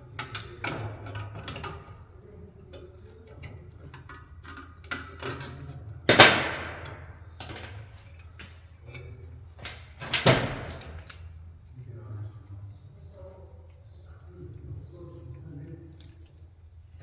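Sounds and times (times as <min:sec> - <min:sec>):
small metallic clicks and knocks: 0:00.1 - 0:02.0, 0:02.7 - 0:11.3.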